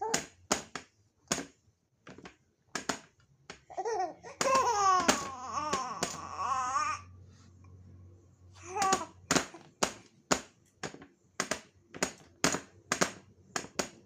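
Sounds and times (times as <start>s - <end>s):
baby laughing: 3.7s - 7.0s
baby high-pitched vocal sound: 3.7s - 7.1s, 8.6s - 9.2s.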